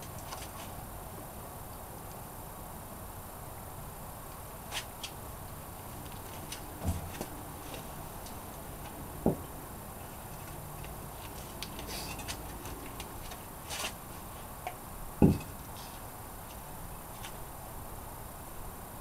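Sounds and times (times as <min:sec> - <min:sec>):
dull knocks: 0:09.2 - 0:09.5, 0:15.2 - 0:15.5.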